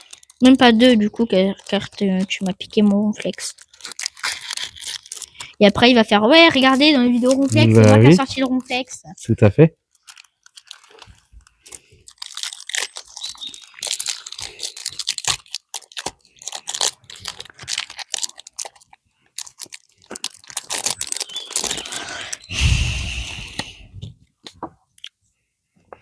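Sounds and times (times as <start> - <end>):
foil wrapper crinkling: 0.0 - 9.0, 9.8 - 23.2
cards being handled: 6.6 - 8.7, 9.9 - 18.8.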